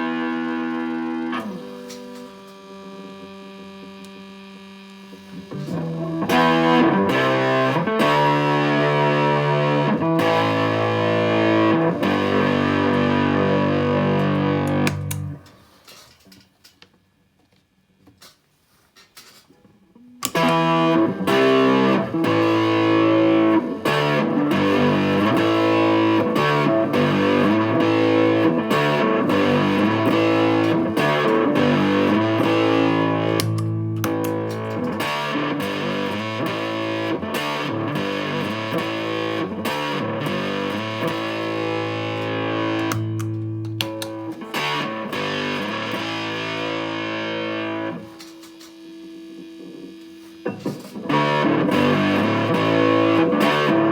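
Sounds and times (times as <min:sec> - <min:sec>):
distorted electric guitar: 0:00.0 - 0:16.4, 0:19.9 - 0:53.9.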